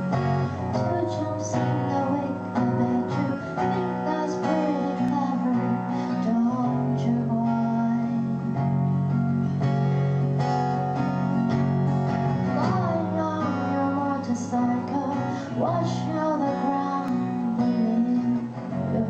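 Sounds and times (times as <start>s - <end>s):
strummed acoustic guitar chords: 0.0s - 19.0s.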